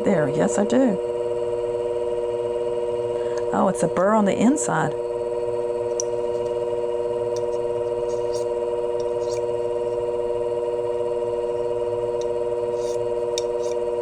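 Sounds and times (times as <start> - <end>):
sharpening machine humming: 0.0 - 4.0, 4.9 - 14.0
blade scraping on grinding stone: 5.9 - 10.2, 11.2 - 14.0.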